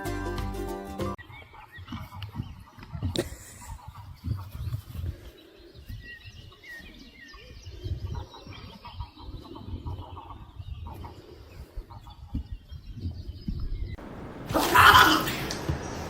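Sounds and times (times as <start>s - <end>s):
low rumbling noise: 13.2s - 16.0s.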